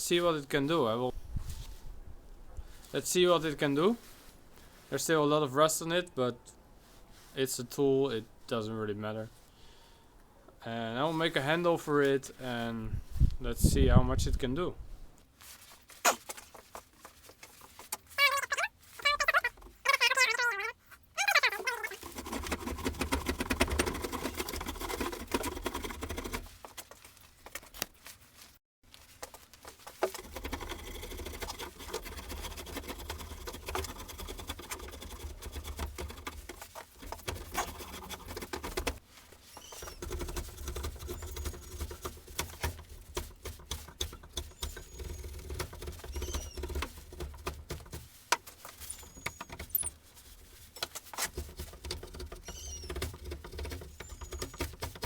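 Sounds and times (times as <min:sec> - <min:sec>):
wood scraping and rasping: 0:15.4 - 0:55.0.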